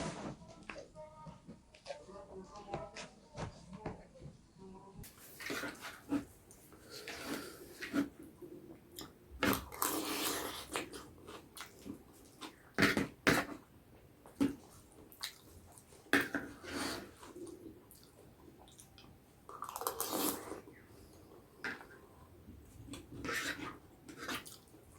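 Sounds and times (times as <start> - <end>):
wet chewing and slurping: 5.0 - 13.7, 14.3 - 21.9, 22.8 - 24.9.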